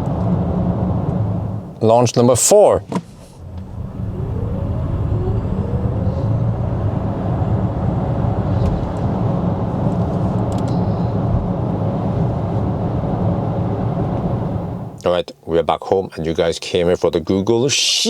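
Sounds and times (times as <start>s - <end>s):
road and tyre rumble: 0.0s - 2.0s, 2.8s - 15.0s
electric motor whine: 3.4s - 9.8s.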